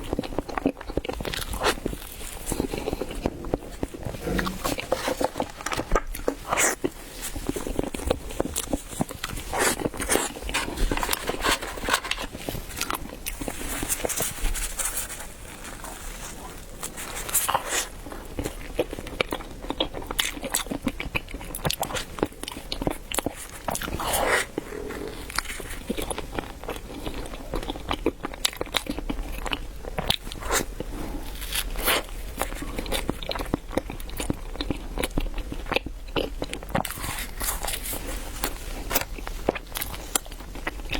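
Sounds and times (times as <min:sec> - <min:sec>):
person chewing bread: 0:00.0 - 0:40.9
sharp mouth clicks and crunches: 0:00.1 - 0:12.1.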